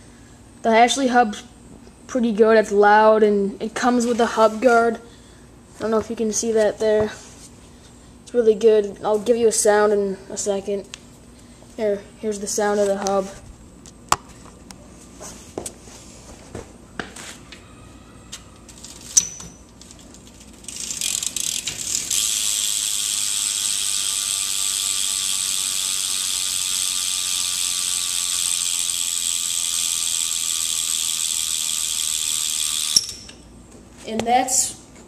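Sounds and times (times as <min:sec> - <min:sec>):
bike hub ratcheting buzz: 0:18.6 - 0:33.5.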